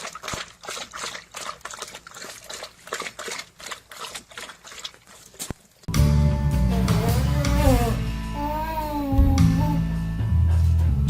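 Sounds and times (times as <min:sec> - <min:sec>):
wet clicks and liquid splashes: 0:00.0 - 0:05.9.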